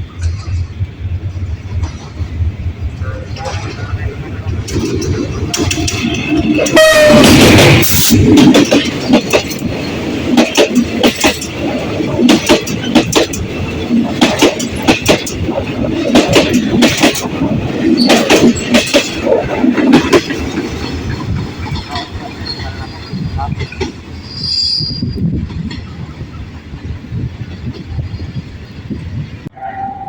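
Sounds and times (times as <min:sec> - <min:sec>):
wheels clunking over rail joints: 0:00.0 - 0:24.2
train rumbling: 0:00.0 - 0:30.0
train horn blast: 0:03.0 - 0:04.0, 0:06.0 - 0:07.8, 0:29.5 - 0:30.0.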